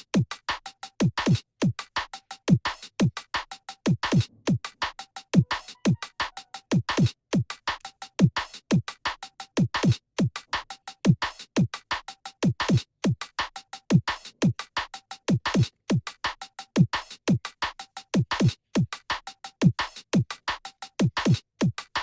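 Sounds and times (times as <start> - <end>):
electronic music with drum beat: 0.0 - 17.6.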